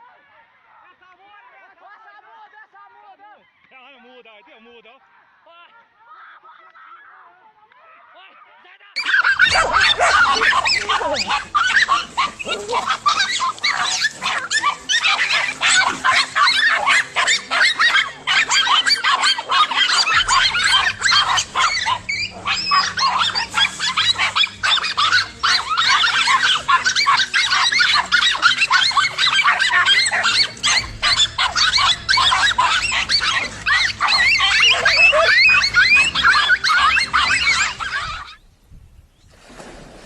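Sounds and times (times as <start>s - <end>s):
chorus of animals yelping and honking: 9.0s - 38.4s.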